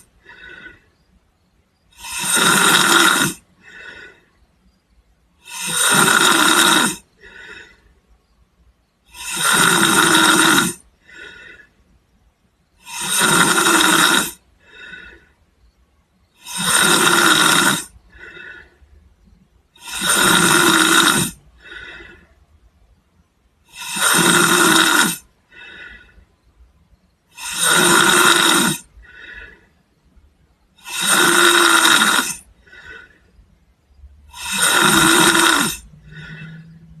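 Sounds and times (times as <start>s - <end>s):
person snoring: 0.0s - 0.9s, 1.9s - 4.3s, 5.4s - 7.9s, 9.1s - 11.7s, 12.8s - 15.4s, 16.3s - 18.8s, 19.7s - 22.3s, 23.6s - 26.2s, 27.3s - 29.7s, 30.8s - 33.2s, 34.3s - 37.0s.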